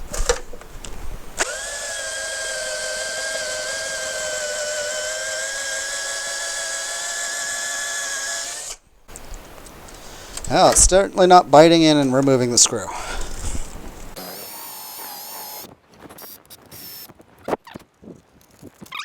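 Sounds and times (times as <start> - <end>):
electric drill whine: 1.3 - 10.8, 12.0 - 17.1.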